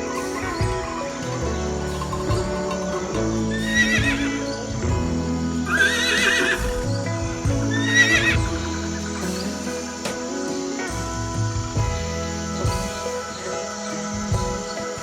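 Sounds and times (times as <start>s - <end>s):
horse whinnying: 0.0s - 10.0s
background music with sustained notes: 0.0s - 15.0s.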